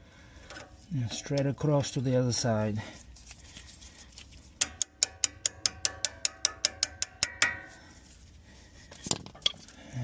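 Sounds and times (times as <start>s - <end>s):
rapid metal-on-metal taps: 4.6s - 7.8s.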